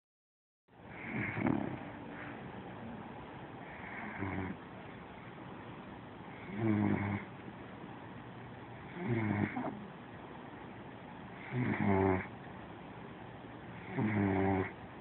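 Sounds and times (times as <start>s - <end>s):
person snoring: 0.9s - 1.9s, 3.7s - 4.6s, 6.4s - 7.3s, 8.9s - 9.8s, 11.4s - 12.3s, 13.8s - 14.8s.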